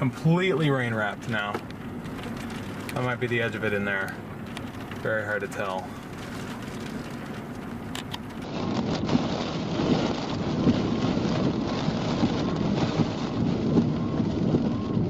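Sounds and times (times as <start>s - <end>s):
rain on vehicle: 0.0s - 15.0s
road noise: 0.0s - 15.0s
wind: 0.0s - 15.0s.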